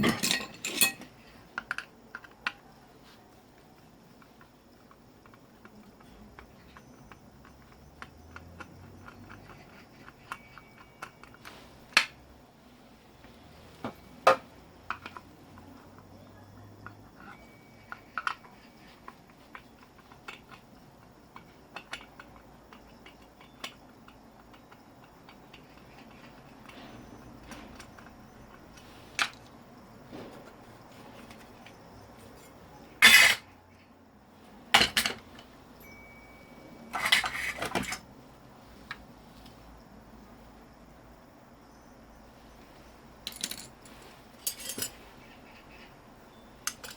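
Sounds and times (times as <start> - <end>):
metal parts clinking: 0.0 - 1.2, 32.4 - 33.5, 36.9 - 38.0, 43.2 - 45.0, 46.6 - 46.9.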